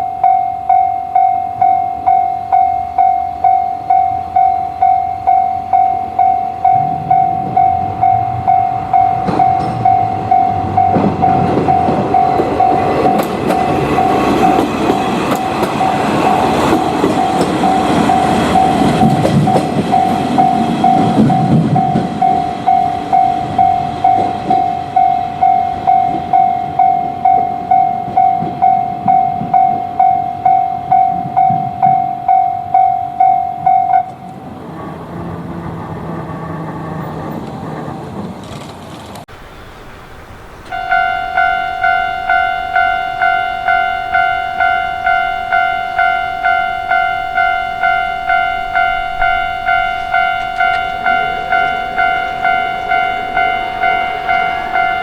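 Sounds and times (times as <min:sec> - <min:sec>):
level crossing warning bell: 0:00.0 - 0:34.5, 0:40.6 - 0:55.0
train wheels clattering over rails: 0:06.6 - 0:32.2.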